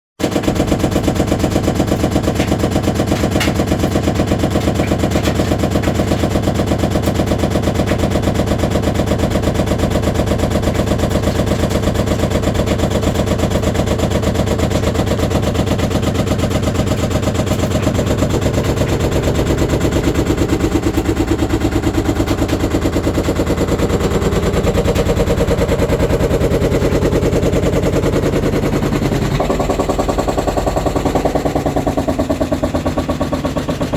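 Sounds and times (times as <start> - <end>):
washing machine motor hum: 0.2 - 33.9
washing machine drum banging: 0.3 - 33.9.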